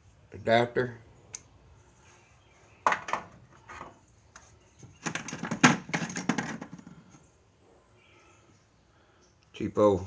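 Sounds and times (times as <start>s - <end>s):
metal tools clinking and rattling: 5.0s - 7.2s.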